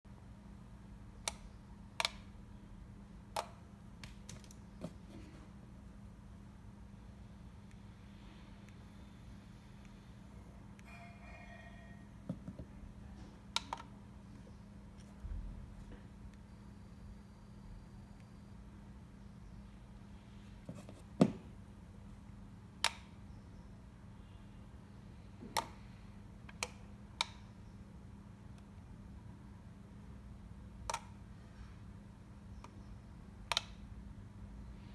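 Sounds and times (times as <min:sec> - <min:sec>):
low electrical hum: 0:00.1 - 0:34.9.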